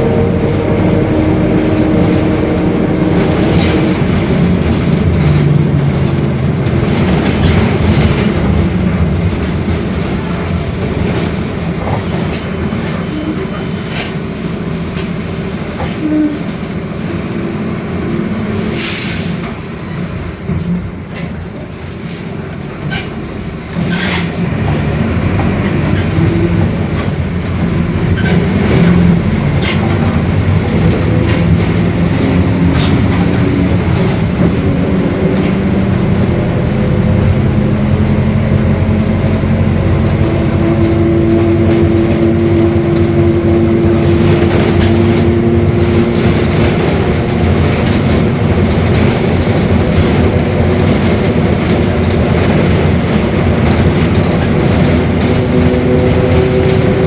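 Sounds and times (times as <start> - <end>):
differential growl: 0.0 - 4.9
bus diesel engine drone: 0.0 - 57.0
body rattles and clicks: 43.9 - 57.0.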